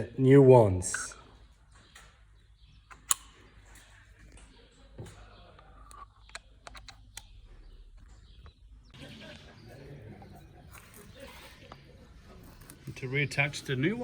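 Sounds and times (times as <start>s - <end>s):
sharp clicks and light knocks: 1.8s - 7.3s.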